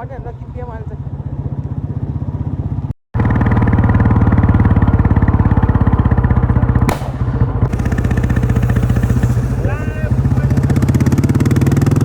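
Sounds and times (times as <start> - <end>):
motorcycle engine thumping: 1.6 - 12.0
sharp crack: 6.8 - 10.6.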